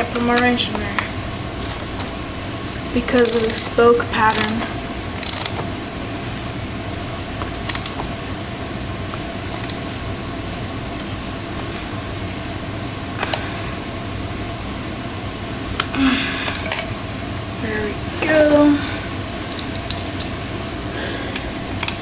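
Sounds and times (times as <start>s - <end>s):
background hum and hiss: 0.0s - 22.0s
wrench clicking on bolt: 5.2s - 5.6s.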